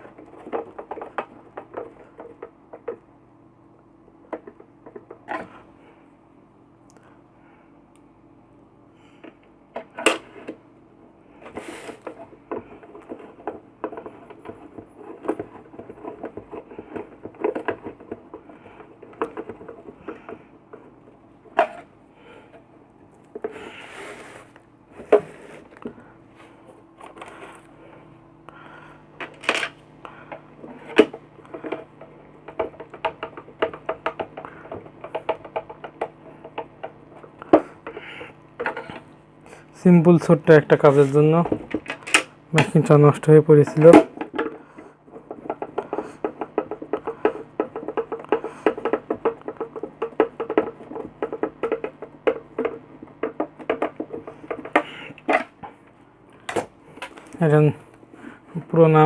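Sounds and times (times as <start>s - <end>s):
tool knocking on plastic casing: 32.4s - 39.0s, 43.7s - 55.5s.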